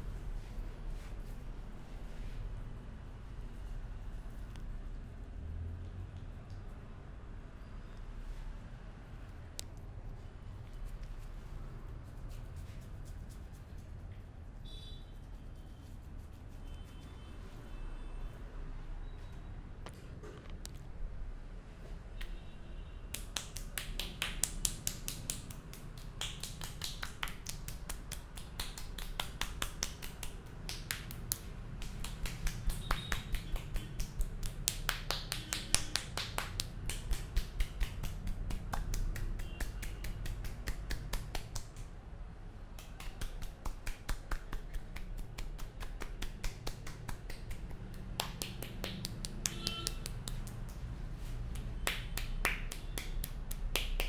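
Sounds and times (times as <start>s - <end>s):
hands tapping on a head: 23.1s - 41.9s, 42.7s - 50.9s, 51.5s - 54.0s.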